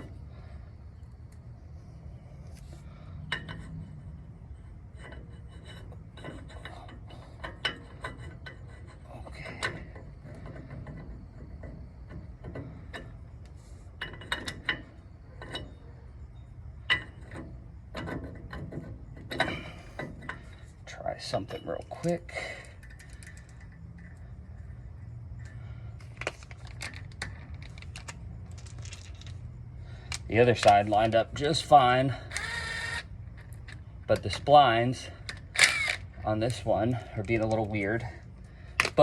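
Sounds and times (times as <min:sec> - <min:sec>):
metal clicks and clinks: 0:25.4 - 0:31.5.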